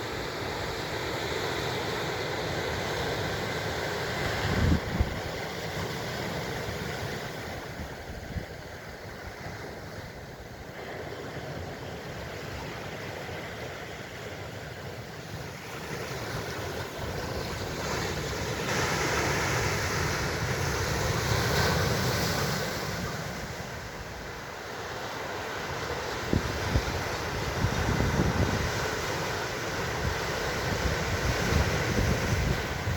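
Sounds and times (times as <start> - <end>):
ocean surf washing ashore: 0.0 - 32.9
wind rumbling on microphone: 4.0 - 11.8, 25.8 - 32.9.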